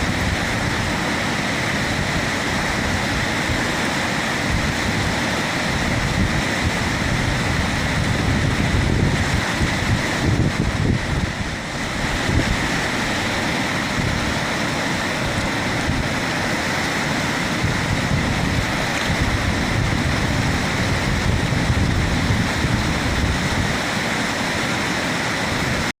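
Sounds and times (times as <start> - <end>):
wind buffeting microphone: 0.0 - 24.6
river rapids rushing: 0.0 - 25.9.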